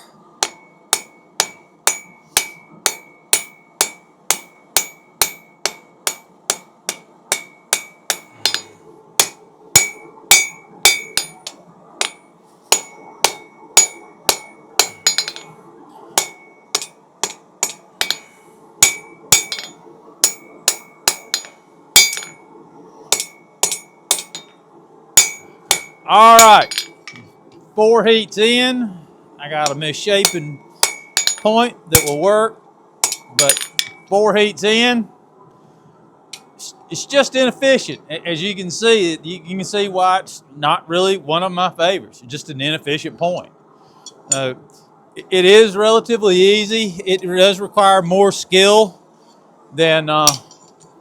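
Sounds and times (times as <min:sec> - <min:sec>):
hammer striking steel on anvil: 0:00.0 - 0:15.6, 0:16.2 - 0:22.4, 0:23.1 - 0:24.6, 0:25.2 - 0:27.3, 0:29.6 - 0:32.3, 0:33.0 - 0:34.1, 0:50.2 - 0:50.6
faint steady hum: 0:00.0 - 0:51.0.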